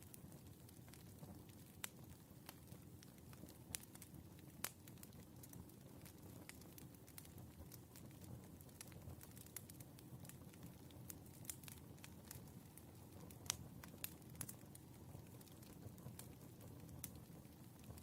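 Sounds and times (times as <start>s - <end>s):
wood fire crackling and popping: 0.0s - 18.0s.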